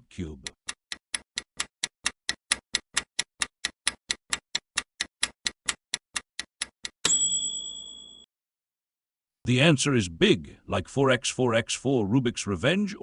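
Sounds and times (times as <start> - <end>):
timer ticking clicks: 0.0 - 7.3.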